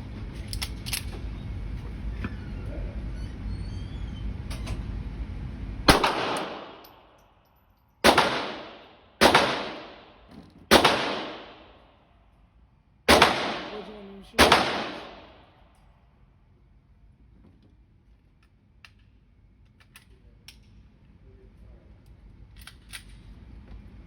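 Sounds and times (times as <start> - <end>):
steady low rumble: 0.0 - 7.3, 8.0 - 24.0
handgun shots echoing: 5.9 - 7.1, 8.0 - 11.8, 13.1 - 15.5.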